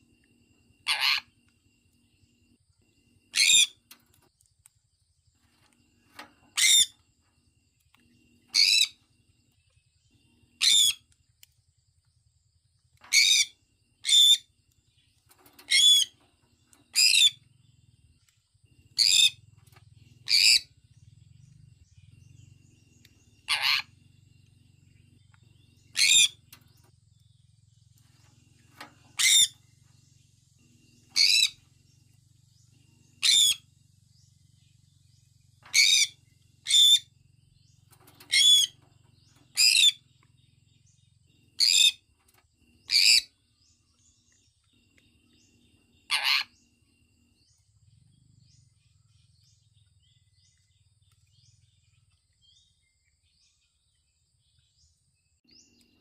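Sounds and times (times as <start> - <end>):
parrot shrill calls: 0.8 - 1.3, 3.3 - 3.8, 8.6 - 9.0, 10.6 - 11.0, 15.7 - 16.1, 23.5 - 23.9, 26.0 - 26.4, 29.2 - 29.6, 31.2 - 31.6, 33.2 - 33.6, 35.7 - 37.0, 38.3 - 38.8, 39.6 - 40.0, 46.1 - 46.5
parrot soft chirps: 3.3 - 4.0, 6.1 - 7.0, 8.0 - 9.0, 10.5 - 11.1, 23.0 - 24.0, 25.8 - 26.6, 28.7 - 29.7, 30.9 - 31.6, 33.1 - 33.7, 35.7 - 37.1, 38.0 - 40.1, 42.8 - 43.4, 46.0 - 46.6.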